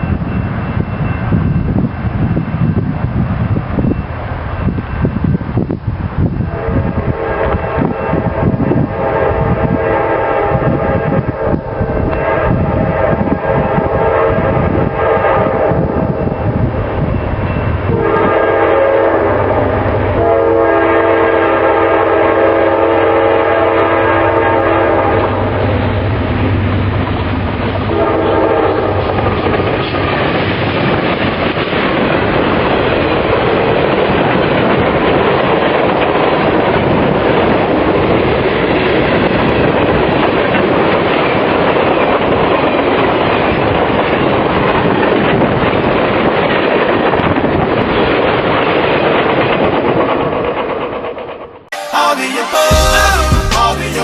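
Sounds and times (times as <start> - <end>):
wind buffeting microphone: 0.0 - 20.8, 25.3 - 50.9
locomotive horn blasts: 6.5 - 16.0, 17.9 - 19.6, 20.2 - 25.4, 27.9 - 28.9, 51.7 - 54.0.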